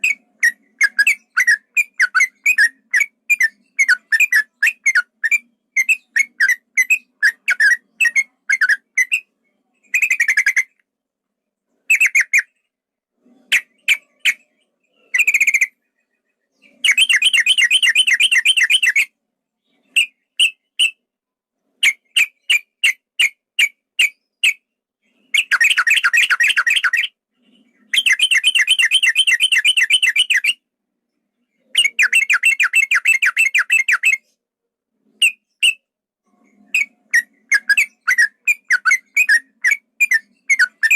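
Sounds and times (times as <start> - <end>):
bird whistled chirps: 0.0 - 9.3, 13.5 - 19.1, 19.9 - 21.0, 25.2 - 30.6, 31.7 - 34.3, 35.2 - 35.9, 36.7 - 40.9.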